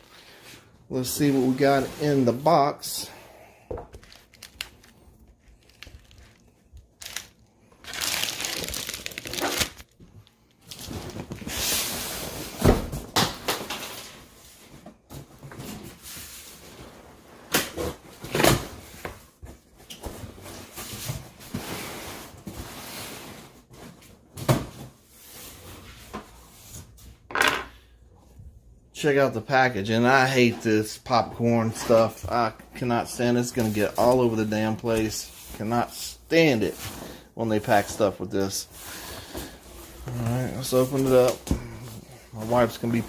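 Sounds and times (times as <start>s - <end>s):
cardboard and packing rustling: 3.7s - 27.1s, 36.6s - 43.0s
tape tearing: 4.0s - 11.4s.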